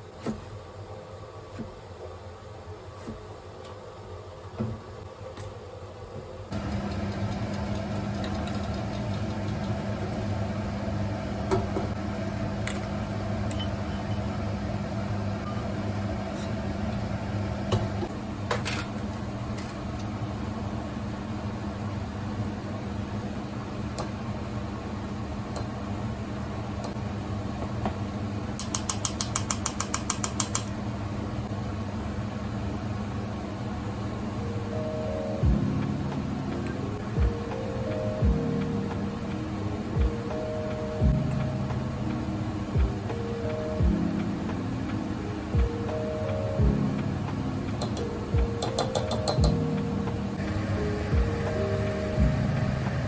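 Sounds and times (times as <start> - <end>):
motor or fan humming: 6.5 - 18.4, 46.6 - 53.0.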